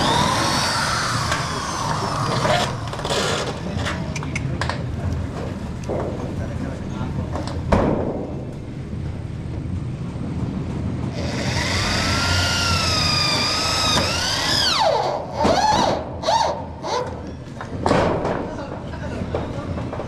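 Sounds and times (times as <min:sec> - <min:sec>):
power tool motor whine: 0:00.0 - 0:03.6, 0:11.2 - 0:17.0.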